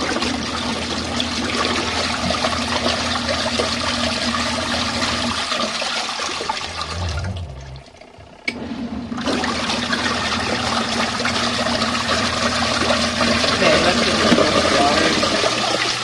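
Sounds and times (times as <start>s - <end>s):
water churning in washing machine: 0.0s - 16.0s
low motor hum: 6.4s - 16.0s.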